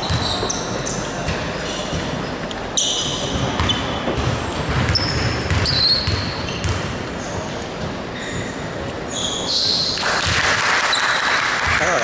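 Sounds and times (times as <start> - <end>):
basketball dribbling: 0.0 - 0.5, 3.2 - 7.0
sneakers squeaking on floor: 0.0 - 10.0.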